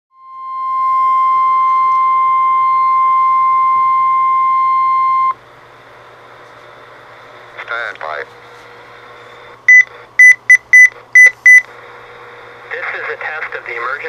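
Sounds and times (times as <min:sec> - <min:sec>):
faint radio hiss: 0:11.8 - 0:14.0.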